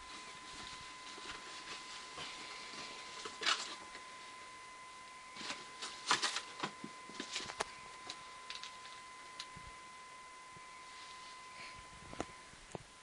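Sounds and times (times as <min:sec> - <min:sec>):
faint high-pitched hum: 0:00.0 - 0:13.0
packaging crinkling and clicking: 0:05.4 - 0:09.5.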